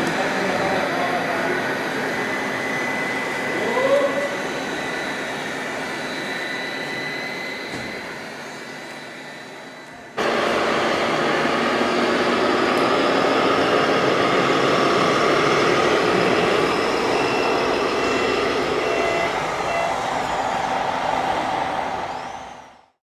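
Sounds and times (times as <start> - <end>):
short reversing beeps: 16.2 - 20.6.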